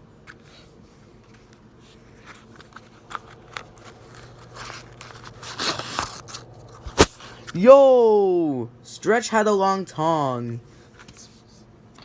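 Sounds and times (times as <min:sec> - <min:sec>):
paper crinkling and rustling: 0:01.2 - 0:07.1.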